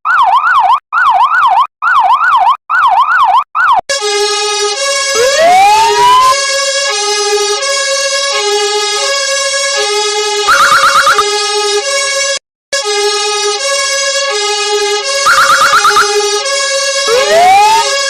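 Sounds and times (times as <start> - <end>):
siren winding up: 0.1 - 9.2, 9.8 - 12.0, 15.1 - 18.0
electronic siren sweeping: 0.1 - 18.0
two-tone emergency horn: 3.9 - 18.0.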